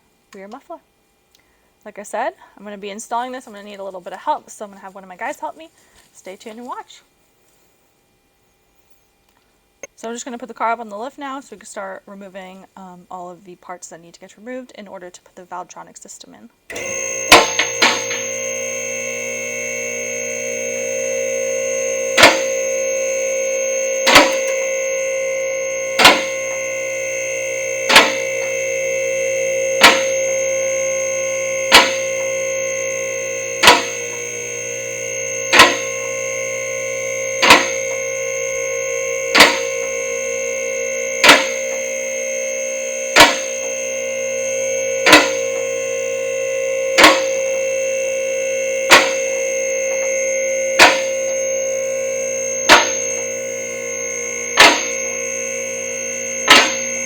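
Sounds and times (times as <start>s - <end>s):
hydraulic pump motor whining: 16.7s - 57.0s.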